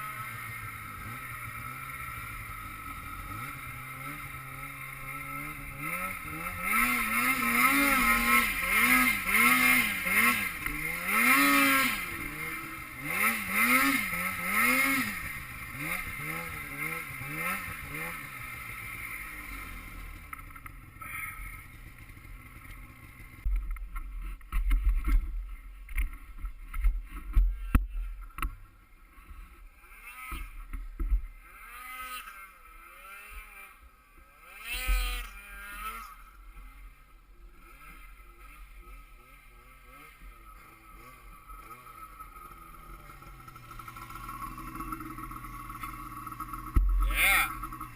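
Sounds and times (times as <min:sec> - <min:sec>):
snowmobile engine revving: 0:00.0 - 0:23.5, 0:24.2 - 0:28.4, 0:29.0 - 0:47.9
low rumbling with knocks: 0:46.6 - 0:47.1.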